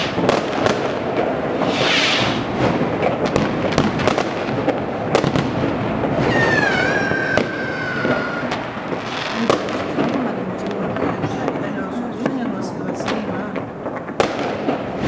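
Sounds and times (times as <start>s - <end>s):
firecrackers crackling: 0.0s - 15.0s
firework bangs: 0.0s - 15.0s
high firework whistle: 1.6s - 2.5s, 6.2s - 8.6s.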